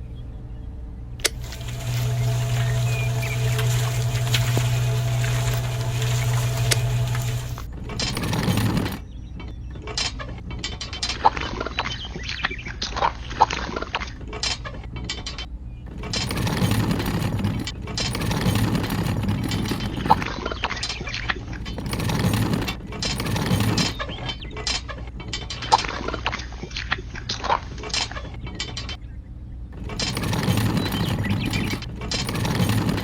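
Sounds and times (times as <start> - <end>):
steady low hum: 0.0 - 9.0
sharp clicks and clinks: 1.2 - 9.0, 16.0 - 20.3, 21.6 - 24.0, 29.9 - 33.0
small geared mechanisms running: 1.2 - 9.2, 15.9 - 24.5, 29.8 - 33.0.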